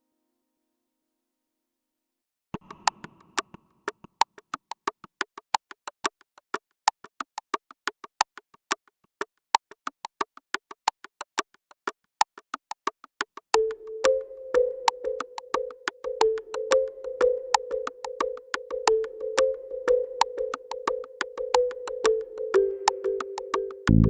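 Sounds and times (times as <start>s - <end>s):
clicky synth percussion music: 12.3s - 24.0s.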